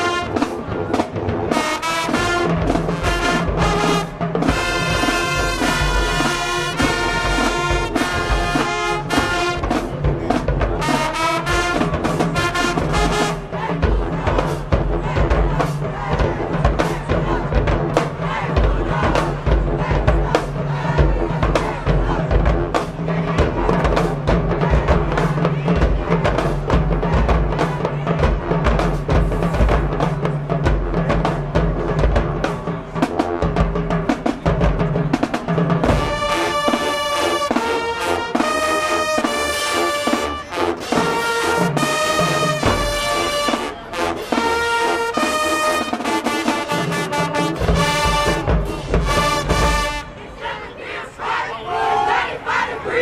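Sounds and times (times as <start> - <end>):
loud brass chords: 0.0 - 25.4, 35.8 - 50.5
heavy drums: 0.0 - 50.4
marching band playing: 0.0 - 53.0.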